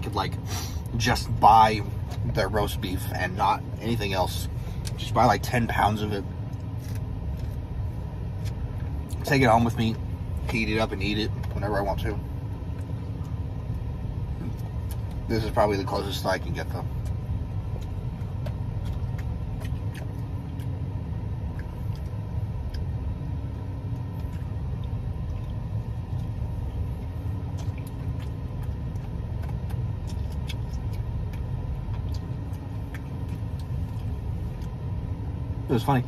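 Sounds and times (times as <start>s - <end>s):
low engine rumble: 0.0s - 36.0s
person eating a sandwich: 6.4s - 9.2s, 16.8s - 35.5s.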